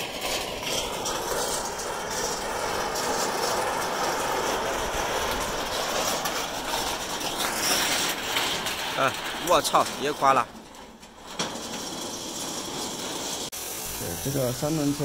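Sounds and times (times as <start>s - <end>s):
gale-force wind buffeting microphone: 0.0s - 11.3s.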